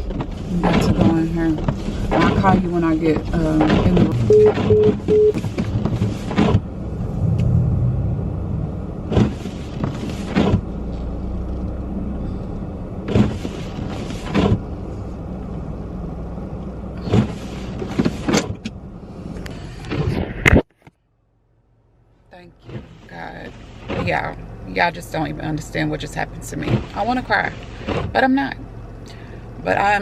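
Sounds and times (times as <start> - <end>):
windshield wipers swishing: 0.0 - 20.5, 22.6 - 28.6
car engine and heater rumble: 0.0 - 30.0.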